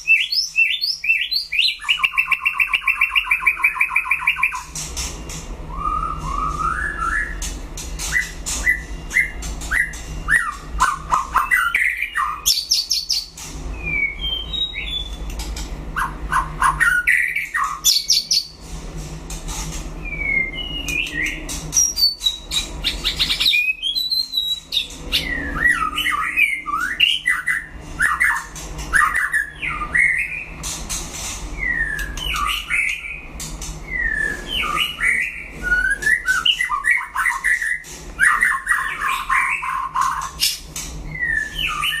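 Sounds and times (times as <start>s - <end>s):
bird singing whistled notes: 5.7s - 7.4s, 8.2s - 15.3s, 20.0s - 28.4s, 41.1s - 42.0s.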